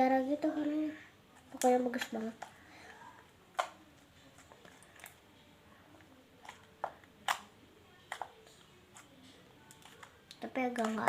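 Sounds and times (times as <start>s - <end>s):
slime clicking and popping: 6.4s - 7.5s.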